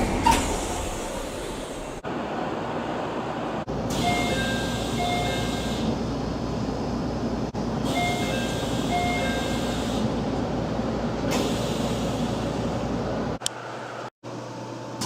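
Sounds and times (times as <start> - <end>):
train hum: 0.0 - 14.1.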